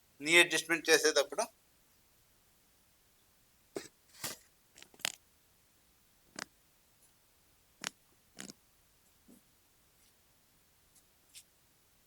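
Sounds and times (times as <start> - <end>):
knee joint cracking and clicking: 3.8 - 5.2, 6.3 - 6.5, 7.8 - 8.6.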